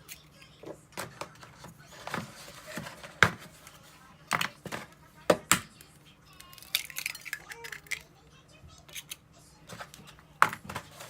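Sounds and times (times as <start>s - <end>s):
eggs cracked on bowl edge: 6.4s - 8.1s.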